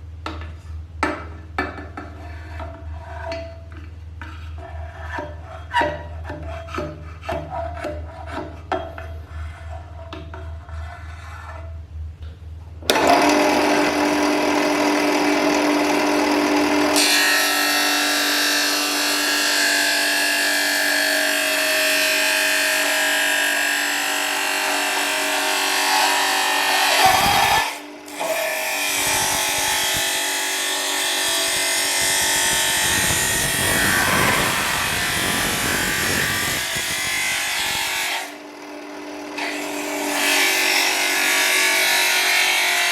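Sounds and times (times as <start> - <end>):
power sander grinding: 12.9 - 42.9.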